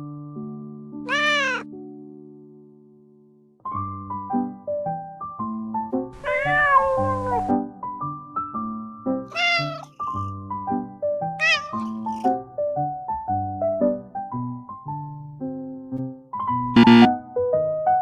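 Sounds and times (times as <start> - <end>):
gentle piano music: 0.0 - 18.0
kitten meowing: 1.1 - 1.6, 6.2 - 7.5, 9.3 - 10.4, 11.4 - 12.3.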